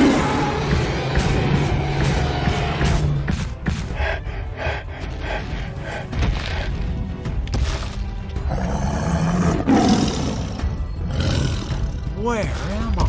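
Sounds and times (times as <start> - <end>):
roar sound effect: 0.0 - 3.2
background music: 0.0 - 13.0.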